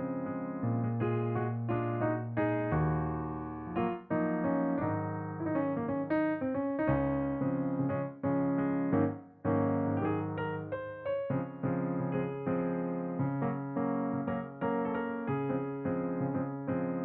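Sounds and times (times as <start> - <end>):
slow piano melody: 0.0 - 17.0.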